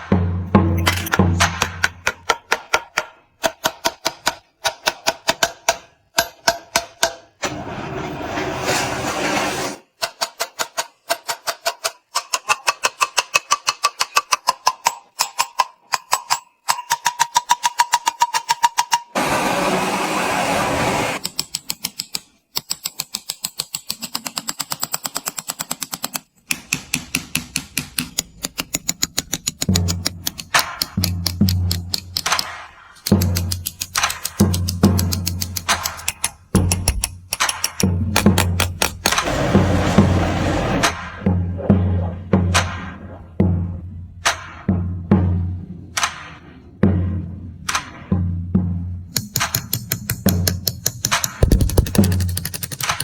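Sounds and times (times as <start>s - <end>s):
small hammer tapping metal: 0.6s - 7.4s, 10.0s - 19.2s, 21.2s - 39.2s, 49.1s - 53.0s.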